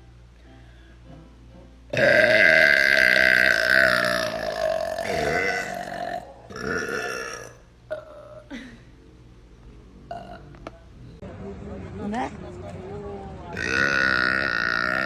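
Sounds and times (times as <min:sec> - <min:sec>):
person burping loudly: 0:01.9 - 0:08.6, 0:10.1 - 0:10.5, 0:13.5 - 0:15.0.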